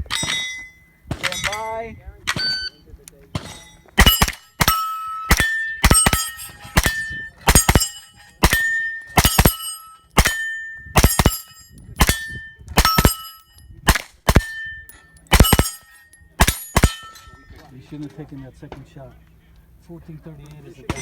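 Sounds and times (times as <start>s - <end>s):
steel plate ringing clang: 0.1s - 1.8s, 3.4s - 17.7s
gunshots: 3.4s - 10.4s, 11.0s - 14.6s, 15.3s - 17.1s.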